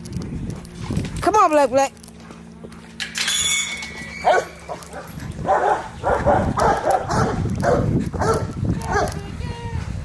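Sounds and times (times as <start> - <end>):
high squeal: 3.2 - 4.6
dogs barking: 4.2 - 9.2.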